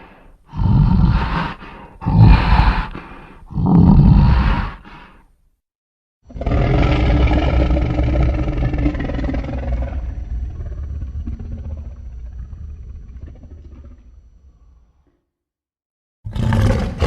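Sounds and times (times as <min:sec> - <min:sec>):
deep rumbling monster roar: 0:00.5 - 0:04.9, 0:06.3 - 0:14.0, 0:16.3 - 0:17.0.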